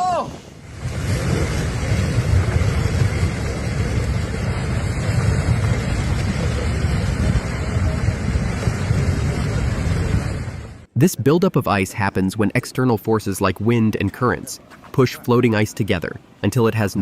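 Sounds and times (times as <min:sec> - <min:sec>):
wind buffeting microphone: 0:00.6 - 0:10.9.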